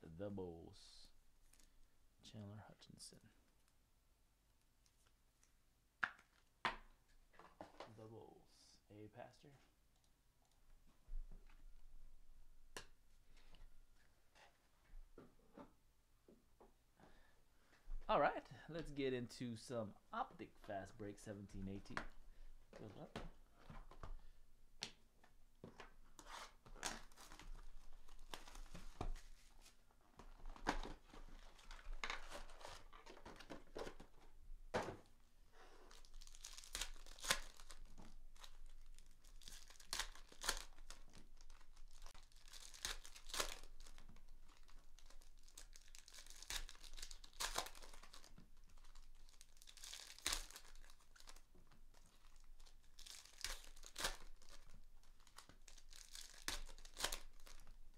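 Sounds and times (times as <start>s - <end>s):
card pack wrappers tearing and crinkling: 26.2s - 29.0s, 30.3s - 34.0s, 35.8s - 57.9s.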